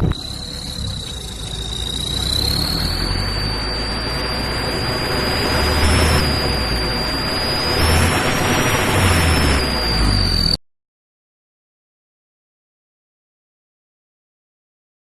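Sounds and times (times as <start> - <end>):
engine running: 0.0 - 10.6
high turbo whistle: 0.0 - 10.6.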